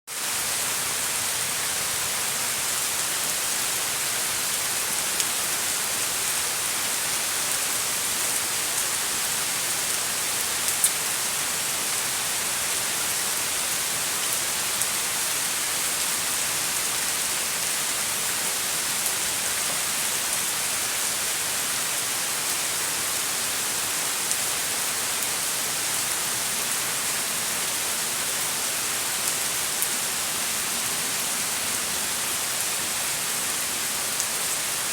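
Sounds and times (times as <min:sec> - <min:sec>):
steady rain falling: 0:00.1 - 0:34.9
sharp raindrop ticks: 0:10.6 - 0:11.0.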